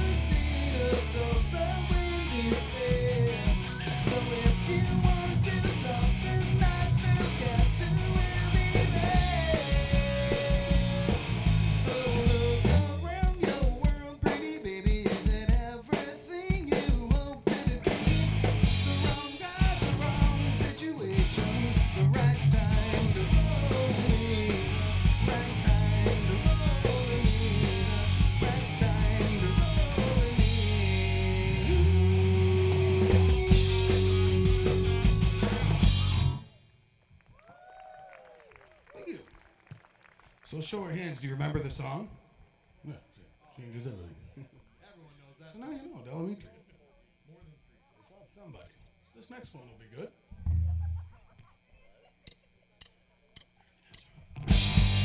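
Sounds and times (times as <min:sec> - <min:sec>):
electric guitars: 0:00.0 - 0:13.1, 0:17.4 - 0:36.6, 0:54.4 - 0:55.0
bass guitar: 0:00.0 - 0:13.5, 0:17.7 - 0:36.6, 0:50.4 - 0:51.1, 0:54.3 - 0:55.0
drum kit: 0:00.0 - 0:36.6, 0:54.4 - 0:55.0.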